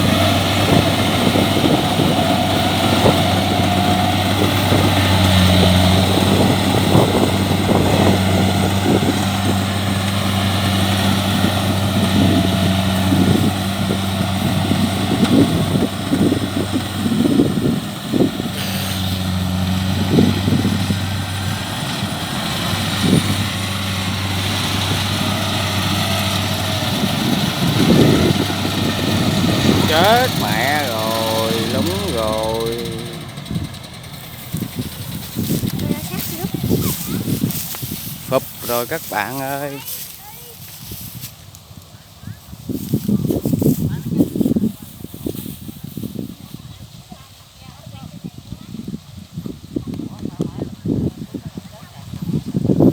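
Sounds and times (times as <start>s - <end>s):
diesel engine running: 0.0s - 41.8s.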